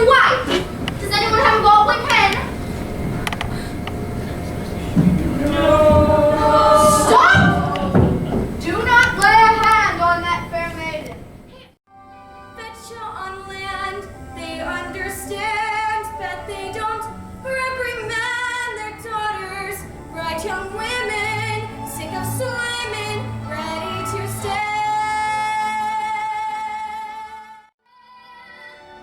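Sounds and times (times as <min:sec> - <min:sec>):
person singing with vibrato: 0:05.4 - 0:08.1.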